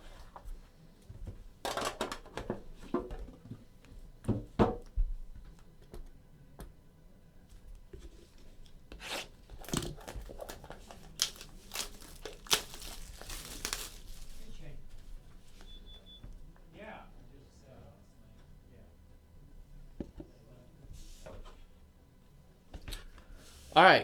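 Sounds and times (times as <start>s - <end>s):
packaging tearing and crinkling: 9.0s - 14.6s.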